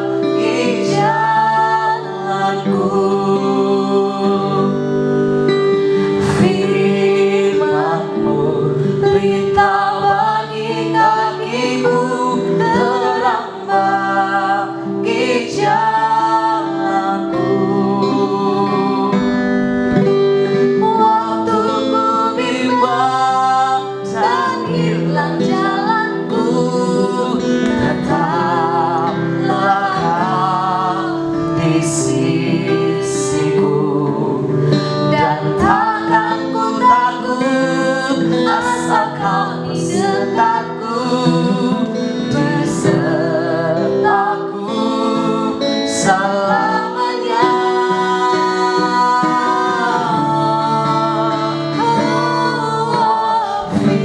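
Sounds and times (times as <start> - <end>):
acoustic guitar: 0.0 - 54.0
woman singing: 0.0 - 54.0.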